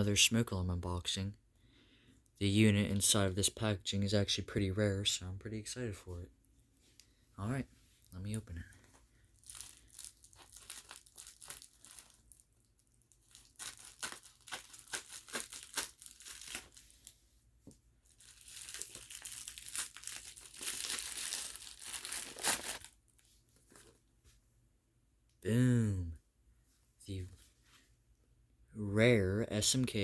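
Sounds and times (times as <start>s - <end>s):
packaging crinkling and tearing: 9.4s - 17.1s, 18.0s - 24.0s.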